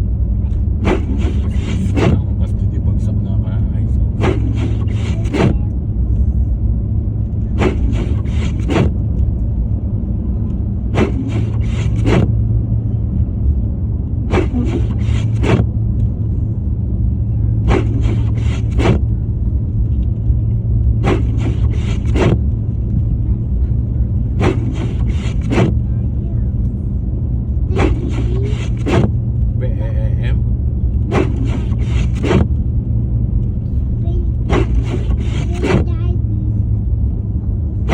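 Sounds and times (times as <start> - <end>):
car engine and road rumble: 0.0 - 37.9
windshield wipers scraping snow: 0.7 - 2.4, 4.0 - 5.7, 7.4 - 9.0, 10.8 - 12.4, 14.3 - 15.8, 17.6 - 19.2, 20.9 - 22.6, 24.2 - 25.9, 27.7 - 29.2, 31.0 - 32.6, 34.4 - 36.0.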